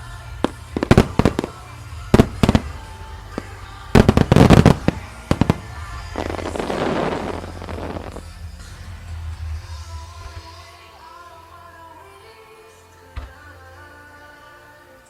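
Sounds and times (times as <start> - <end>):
fireworks crackling rush: 0.0 - 10.7
faint background music: 0.0 - 15.0
firework shells bursting: 0.4 - 8.8.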